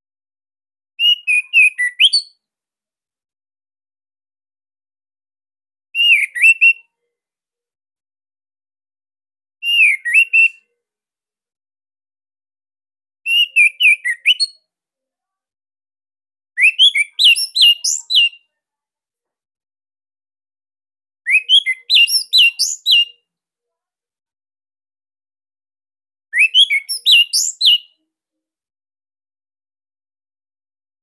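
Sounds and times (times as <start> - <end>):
songbird whistling: 1.0 - 2.4, 6.0 - 6.9, 9.6 - 10.6, 13.3 - 14.6, 16.6 - 18.4, 21.3 - 23.1, 26.4 - 27.9.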